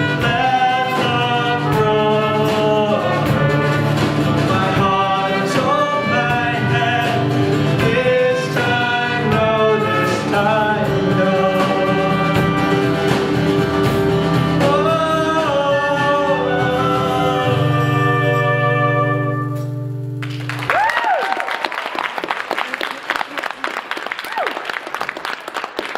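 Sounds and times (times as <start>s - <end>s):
live band playing: 0.0s - 20.9s
voices singing together: 4.3s - 12.6s.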